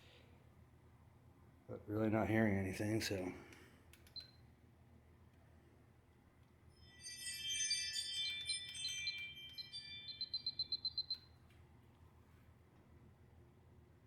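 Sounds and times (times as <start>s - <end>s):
bright chiming jingle: 6.8s - 11.1s
short high beeps: 7.8s - 11.2s.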